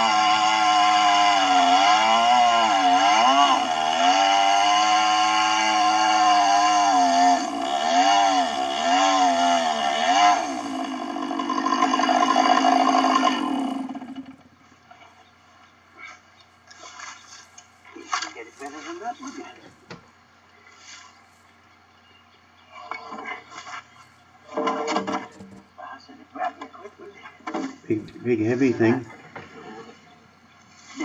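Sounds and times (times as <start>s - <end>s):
chainsaw cutting log: 0.0s - 14.5s.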